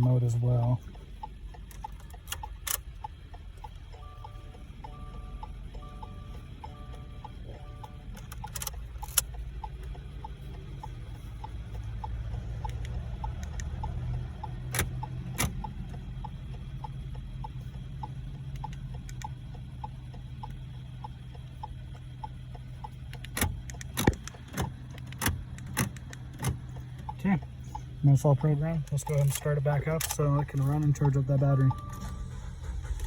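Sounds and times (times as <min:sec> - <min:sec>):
flasher relay ticking: 0:00.0 - 0:32.1
low steady hum: 0:00.0 - 0:33.0
sharp clicks: 0:08.1 - 0:31.9.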